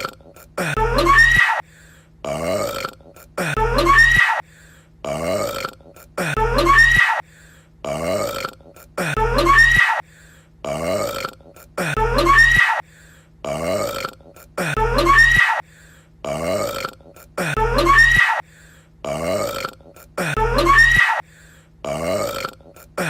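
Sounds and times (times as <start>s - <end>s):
person burping loudly: 0.0s - 1.3s, 2.2s - 4.1s, 5.0s - 6.8s, 7.8s - 9.6s, 10.6s - 12.4s, 13.4s - 15.2s, 16.2s - 18.0s, 19.0s - 20.8s, 21.8s - 23.0s.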